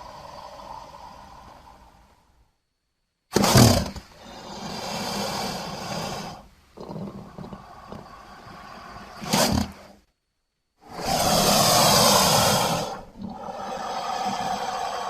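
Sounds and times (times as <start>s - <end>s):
cartoon crocodile roar: 10.9s - 15.0s.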